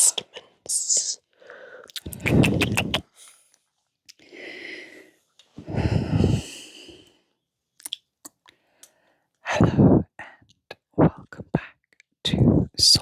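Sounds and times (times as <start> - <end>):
breath-like puffs: 5.6 - 7.0.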